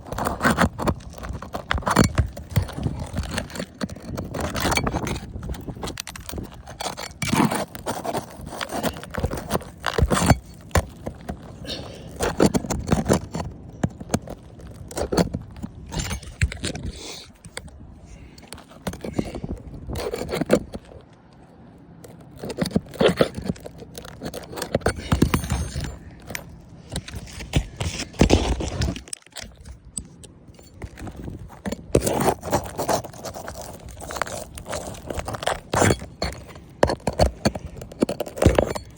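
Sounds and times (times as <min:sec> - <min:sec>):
tool scraping and knocking under shingle: 0:00.0 - 0:21.3, 0:22.0 - 0:38.9.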